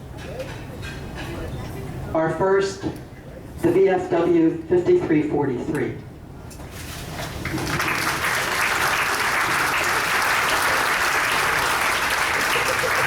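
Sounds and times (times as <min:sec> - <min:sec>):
audience applauding: 0:07.3 - 0:13.0.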